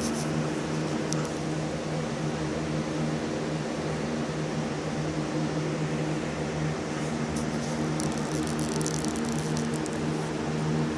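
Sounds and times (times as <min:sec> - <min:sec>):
machine hum: 0:00.0 - 0:10.9
light crackling: 0:07.3 - 0:10.2.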